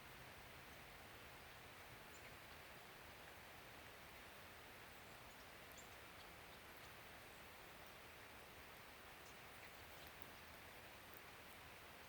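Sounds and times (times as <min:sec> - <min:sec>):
faint steady hiss: 0:00.0 - 0:12.0
faint high ticks: 0:09.2 - 0:11.6.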